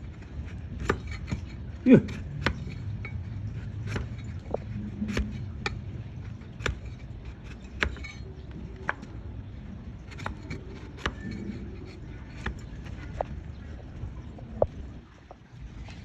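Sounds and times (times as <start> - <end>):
low background noise: 0.0 - 16.0
cutting tool snapping hoof: 6.4 - 8.2, 10.1 - 11.4.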